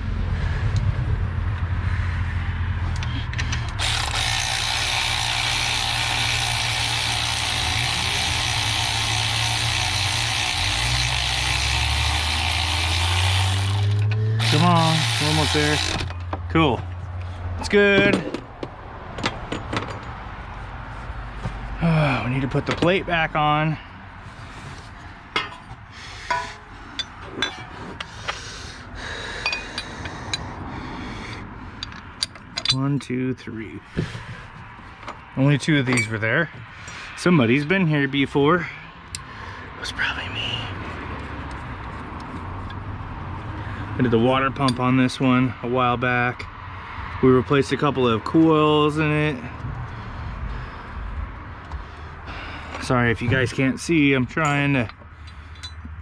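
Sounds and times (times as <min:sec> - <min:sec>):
ratchet wrench clicking: 0:02.9 - 0:16.3
metal clinking: 0:25.3 - 0:25.7, 0:26.3 - 0:27.8, 0:54.4 - 0:55.9.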